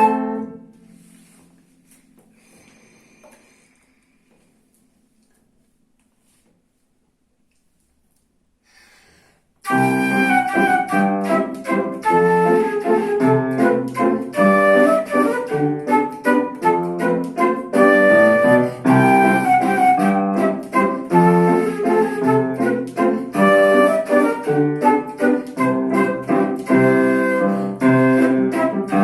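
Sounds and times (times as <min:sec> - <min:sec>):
solo instrumental waltz: 0:00.0 - 0:02.2, 0:09.6 - 0:29.0.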